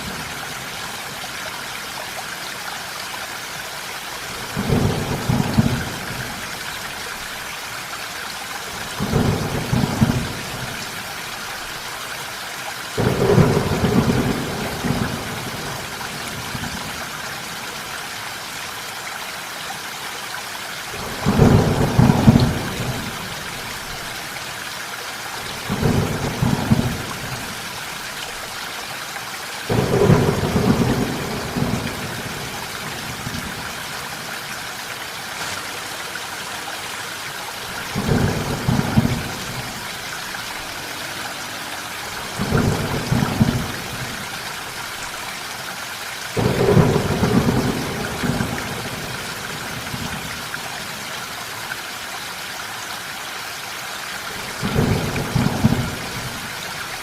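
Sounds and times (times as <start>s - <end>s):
steady rain: 0.0s - 57.0s
thunder rumbles: 4.5s - 6.4s, 8.9s - 11.0s, 13.0s - 16.9s, 21.0s - 23.4s, 25.6s - 27.6s, 29.7s - 33.9s, 37.6s - 39.9s, 42.0s - 44.4s, 46.4s - 50.5s, 54.4s - 56.4s.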